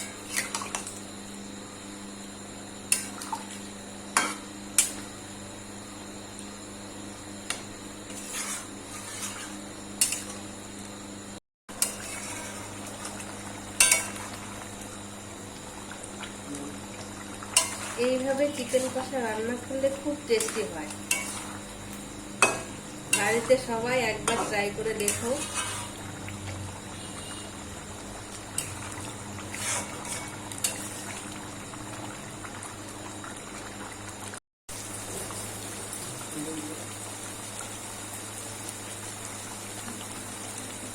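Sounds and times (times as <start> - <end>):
gravy bubbling in a pan: 0.0 - 11.0, 11.7 - 40.9
utensil scraping a pot: 8.1 - 10.3, 11.8 - 12.7, 17.6 - 19.1, 20.4 - 21.6, 24.3 - 26.0, 29.5 - 31.0.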